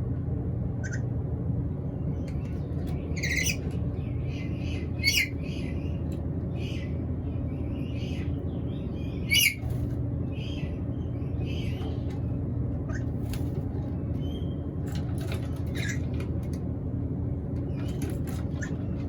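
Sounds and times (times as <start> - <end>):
low background rumble: 0.0 - 19.0
parrot harsh calls and chirps: 3.0 - 3.7, 4.3 - 5.8, 9.0 - 9.8.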